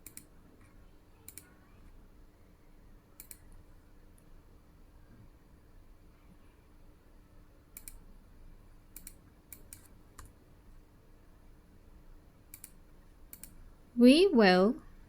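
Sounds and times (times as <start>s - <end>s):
computer mouse clicks: 0.0s - 1.5s, 3.2s - 3.6s, 7.7s - 8.0s, 8.9s - 10.4s, 12.5s - 13.6s
low room hum: 0.0s - 15.0s.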